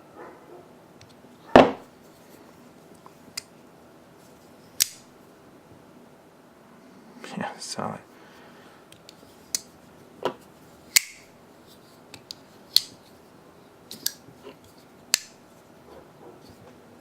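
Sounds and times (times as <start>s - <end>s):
folding knife blade clicking: 4.8s - 5.0s, 10.9s - 11.2s.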